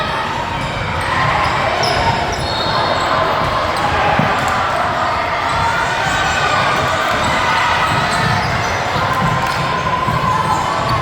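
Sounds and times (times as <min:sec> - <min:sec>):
crowd and player chatter: 0:00.0 - 0:11.0.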